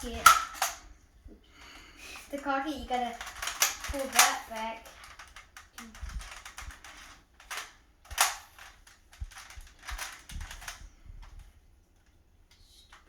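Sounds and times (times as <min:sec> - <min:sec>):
toy blaster plastic clicks: 0:00.0 - 0:00.8, 0:03.1 - 0:10.8.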